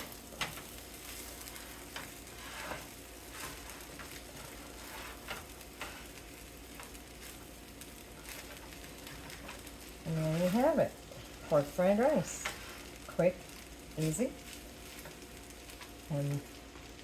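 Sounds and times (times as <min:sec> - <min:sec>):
utensil scraping a pan: 0:00.0 - 0:07.4, 0:08.0 - 0:13.1
rice sizzling in a pan: 0:00.0 - 0:17.0.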